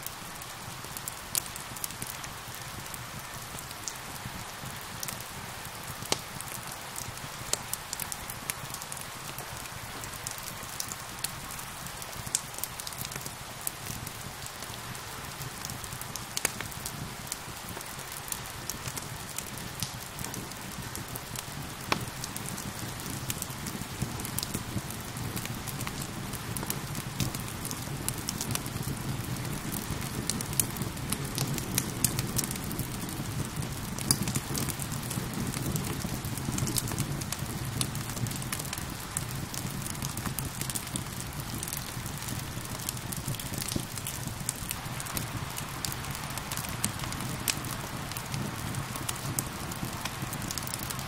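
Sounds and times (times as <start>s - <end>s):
wood fire crackling and popping: 0.0s - 51.0s
rain hissing: 41.0s - 51.0s.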